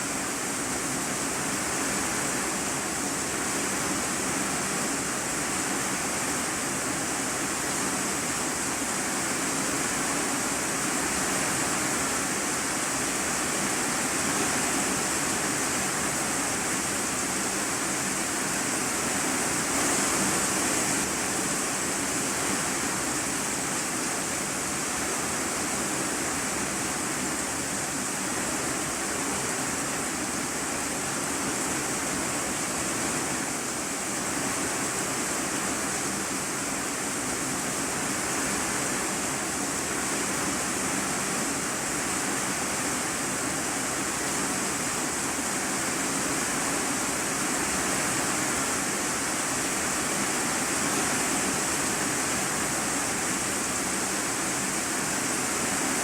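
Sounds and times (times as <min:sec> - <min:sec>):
heavy rain on a metal roof: 0:00.0 - 0:56.0.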